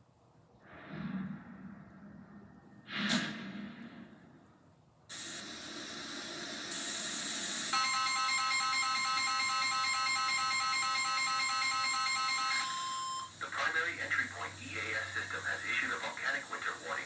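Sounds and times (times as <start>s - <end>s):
static hiss: 4.9s - 7.9s, 13.2s - 17.0s
pulsing electronic alert tones: 7.7s - 13.3s.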